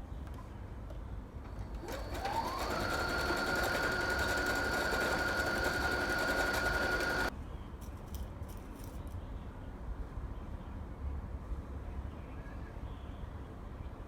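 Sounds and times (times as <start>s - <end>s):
electric sewing machine stitching: 1.5s - 7.3s.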